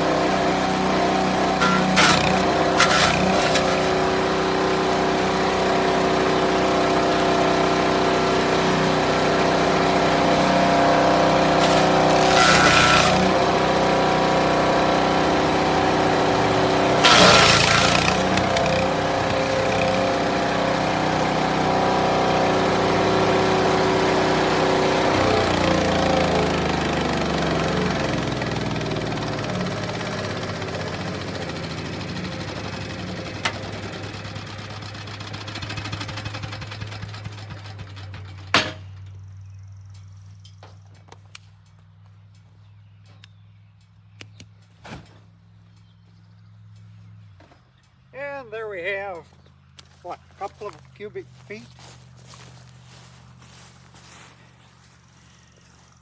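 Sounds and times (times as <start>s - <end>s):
branches crunching in chipper: 0.0s - 34.4s, 49.2s - 56.0s
wood chipper engine running: 0.0s - 39.8s, 48.8s - 56.0s.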